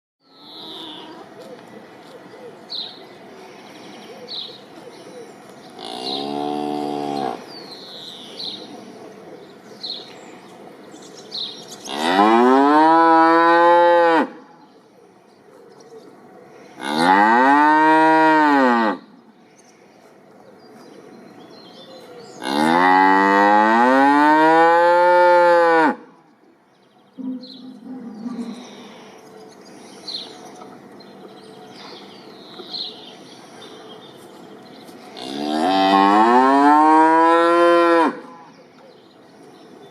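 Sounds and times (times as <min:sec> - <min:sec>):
birds chirping: 0:00.2 - 0:39.9
cow mooing: 0:16.8 - 0:19.0, 0:35.2 - 0:38.2.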